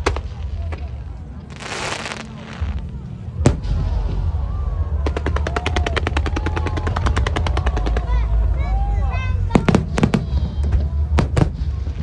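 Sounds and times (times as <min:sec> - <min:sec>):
fireworks crackling: 0:00.0 - 0:03.8
low rumble: 0:00.3 - 0:05.1
firework hissing burst: 0:01.5 - 0:03.0
firework whistling glides: 0:01.5 - 0:03.0
firework bang: 0:01.5 - 0:04.2.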